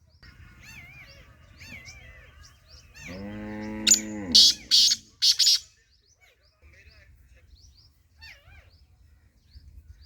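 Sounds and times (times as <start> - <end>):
small birds chirping: 0.0 - 10.0
cow mooing: 3.1 - 4.7.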